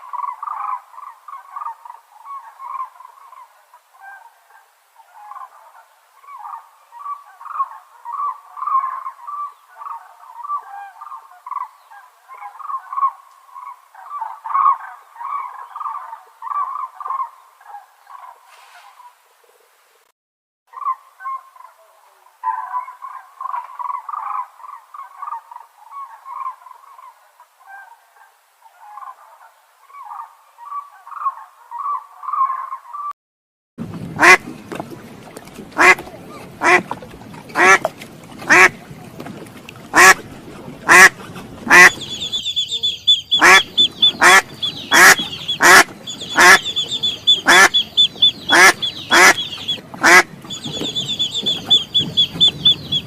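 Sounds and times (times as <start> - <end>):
ducks quacking: 34.2 - 53.0
high-pitched chirping: 41.8 - 49.8, 50.5 - 53.0.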